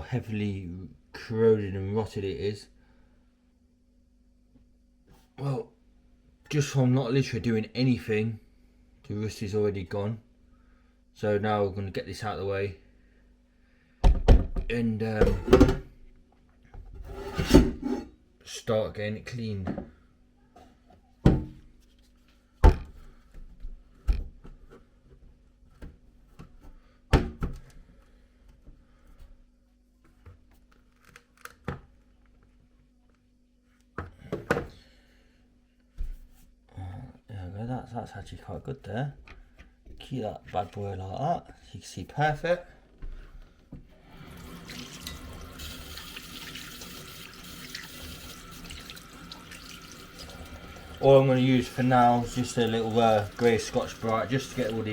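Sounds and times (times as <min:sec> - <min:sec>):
faint steady hum: 0:00.0 - 0:54.9
tap running into sink: 0:44.7 - 0:54.9.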